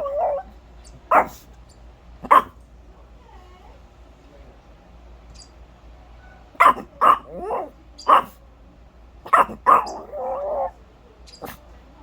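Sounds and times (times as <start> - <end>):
dog grumbling: 0.0 - 0.5, 6.6 - 8.3, 9.3 - 10.8
small dog barking: 0.0 - 1.5, 2.2 - 2.6, 6.2 - 8.4, 9.2 - 10.8, 11.4 - 11.6.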